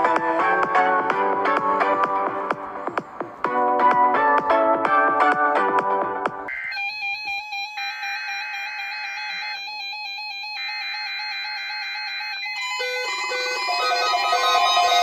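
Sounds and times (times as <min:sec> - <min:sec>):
sustained electronic tones: 0:06.5 - 0:15.0
melody of short alternating notes: 0:12.6 - 0:15.0.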